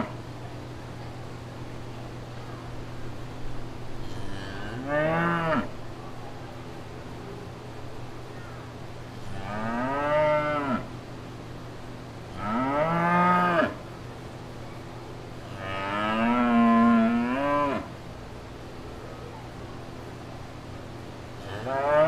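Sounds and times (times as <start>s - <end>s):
cattle mooing: 9.3s - 10.9s, 15.6s - 17.9s, 21.4s - 22.0s.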